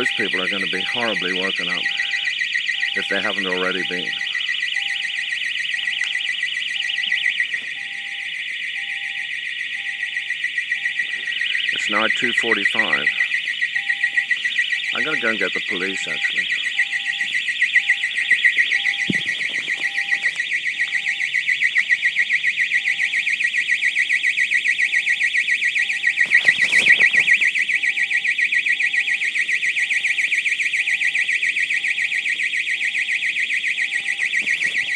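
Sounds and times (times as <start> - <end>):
faint beeps: 0.0 - 22.2, 25.8 - 28.2
pulsing high-pitched alarm tone: 0.0 - 34.9
rustling: 18.2 - 21.0, 26.0 - 27.7, 34.3 - 34.9.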